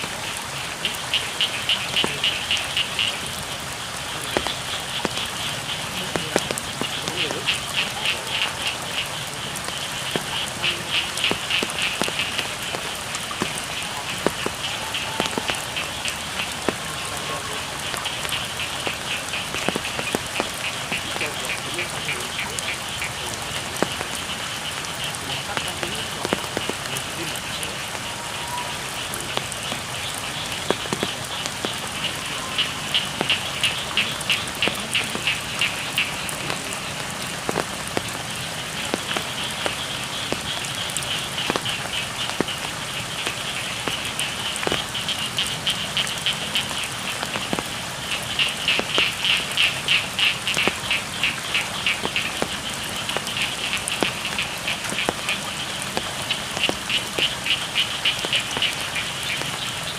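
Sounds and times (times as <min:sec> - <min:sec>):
frogs calling: 0:00.0 - 0:59.9
steady rain: 0:00.0 - 0:59.9.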